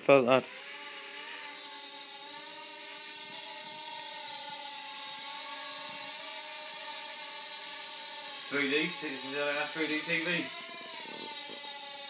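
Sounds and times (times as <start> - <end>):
toy helicopter buzzing whir: 0.0 - 12.0.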